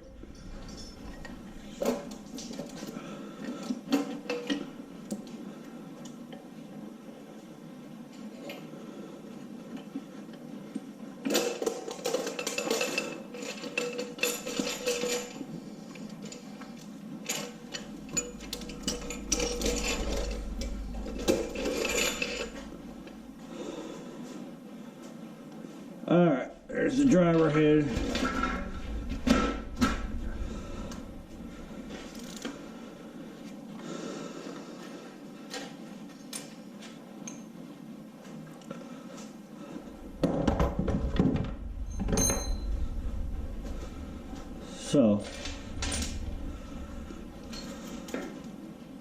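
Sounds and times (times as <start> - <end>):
low rumble: 0.0 - 2.9, 17.6 - 23.9, 26.5 - 33.4, 39.8 - 49.0
metallic clinks and scraping: 0.0 - 3.0, 11.3 - 23.4, 28.0 - 33.2, 41.6 - 48.6.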